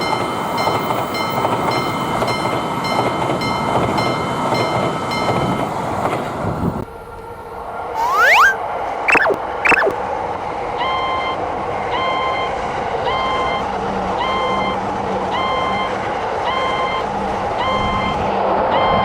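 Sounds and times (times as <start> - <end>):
railroad crossing alarm: 8.0 - 9.9
rising and falling tones: 8.0 - 10.0.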